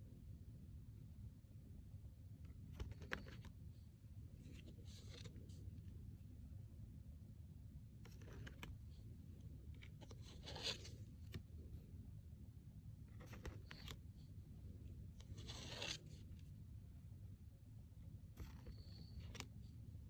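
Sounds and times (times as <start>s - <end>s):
low steady hum: 0.0s - 20.0s
cards sliding and swishing: 2.8s - 3.6s, 4.4s - 5.7s, 8.1s - 9.0s, 9.8s - 11.5s, 13.2s - 14.2s, 15.2s - 16.5s, 18.4s - 19.7s.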